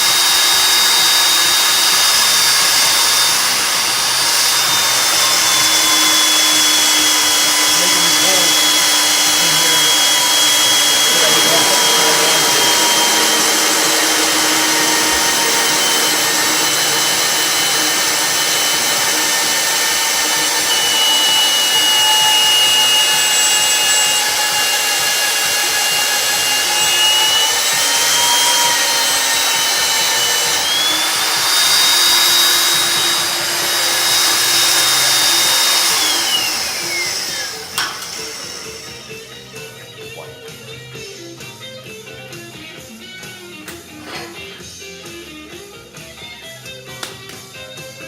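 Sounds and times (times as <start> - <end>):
drill motor whining: 0.0 - 41.1, 43.7 - 44.8.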